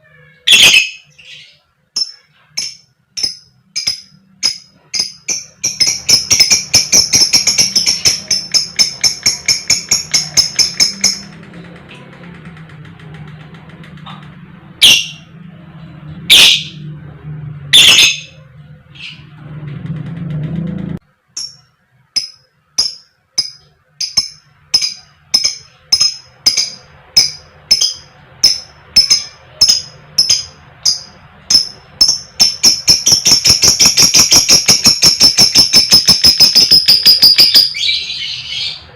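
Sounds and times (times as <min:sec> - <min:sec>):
lovebird chirping calls: 0:00.5 - 0:11.3, 0:14.8 - 0:15.3, 0:16.3 - 0:16.8, 0:17.7 - 0:18.4, 0:21.4 - 0:38.9.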